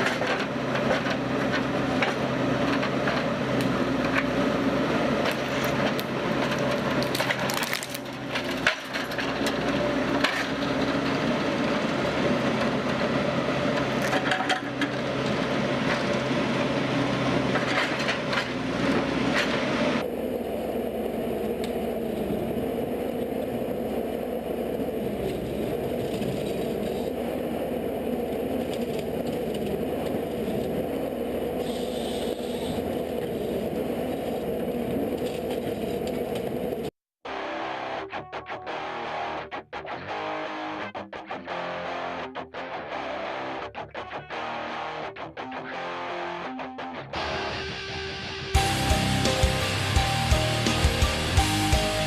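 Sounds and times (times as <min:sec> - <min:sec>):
wood-processing machine hum: 0:00.0 - 0:36.7
wood cracking and scraping: 0:05.2 - 0:11.0.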